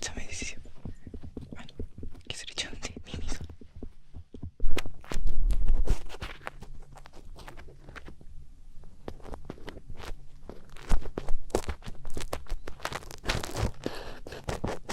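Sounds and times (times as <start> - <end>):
scratching clicks on microphone: 0.0 - 8.1
deep rubbing against microphone: 0.0 - 14.9.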